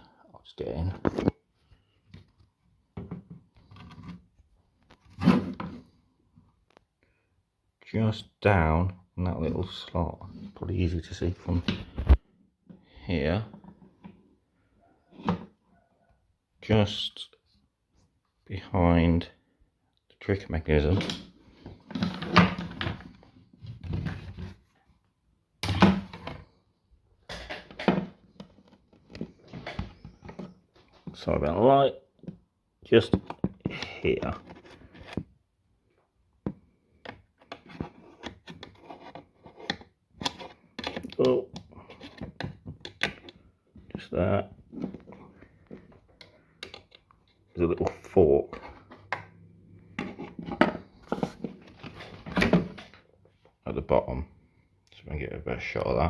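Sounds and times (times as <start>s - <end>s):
rubbing and scraping handling noise: 0.6s - 7.0s, 9.3s - 15.7s, 21.0s - 25.2s, 26.0s - 53.6s.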